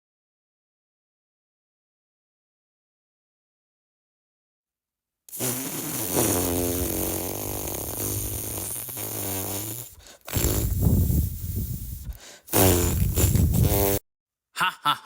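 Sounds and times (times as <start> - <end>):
buzzy low-pitched comedy blare: 10.3 - 14.0.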